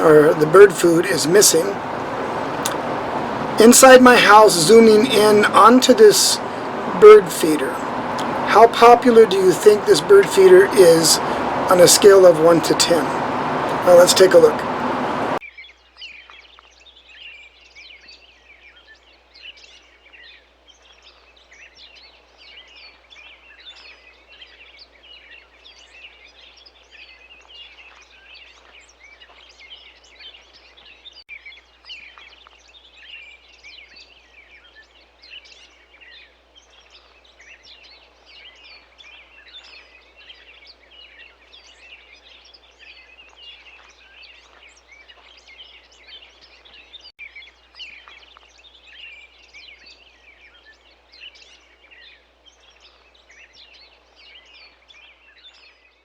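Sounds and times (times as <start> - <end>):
small birds chirping: 0.0 - 15.4.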